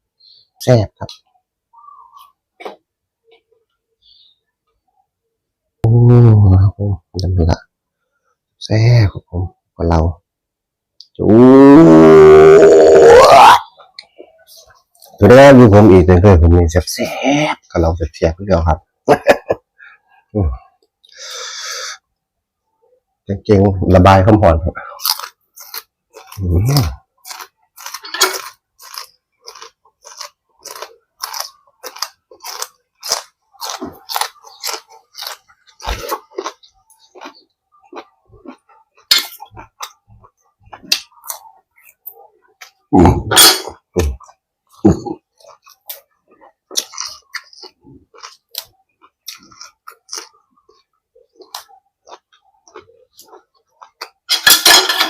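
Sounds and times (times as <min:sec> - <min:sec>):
chewing and crunching food: 0:24.8 - 0:42.9, 0:43.9 - 0:54.4.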